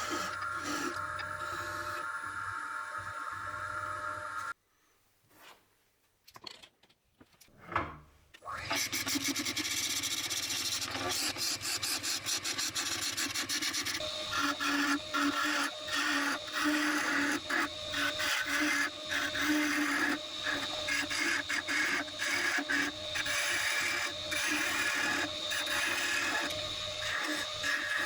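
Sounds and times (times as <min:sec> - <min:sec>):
tool scraping wood on lathe: 0:00.0 - 0:02.0, 0:08.8 - 0:28.0.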